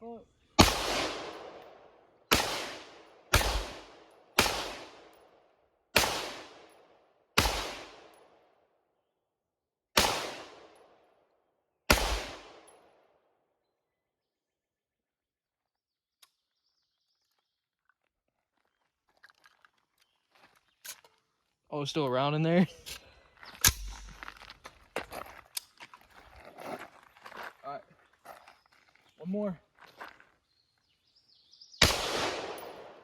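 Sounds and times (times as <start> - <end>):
rifle shots with echo: 0.6 - 8.6, 10.0 - 11.2, 11.9 - 13.1, 31.8 - 33.0.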